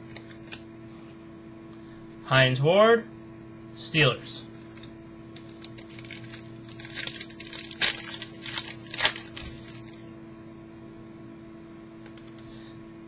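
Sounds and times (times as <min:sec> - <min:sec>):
low electrical hum: 0:00.0 - 0:13.0
cards rustling and clicking: 0:04.6 - 0:10.0.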